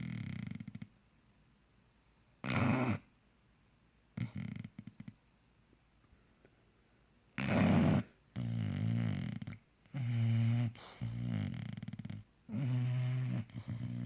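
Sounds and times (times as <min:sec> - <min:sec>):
dog snoring loudly: 0:00.0 - 0:00.9, 0:02.4 - 0:03.1, 0:04.2 - 0:05.1, 0:07.4 - 0:14.0
dog hissing breath: 0:10.6 - 0:11.4.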